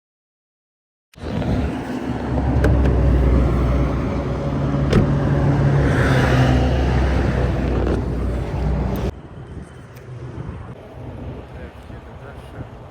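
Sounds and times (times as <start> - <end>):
car engine running: 1.2 - 9.1
road noise: 1.2 - 12.9.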